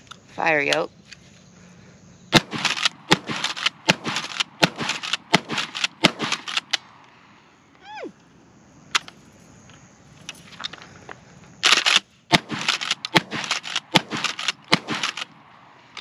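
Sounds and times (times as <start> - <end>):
shotgun shots: 2.3 - 6.9, 11.6 - 15.4
sharp clacks and cracks: 2.4 - 6.8, 11.6 - 15.3.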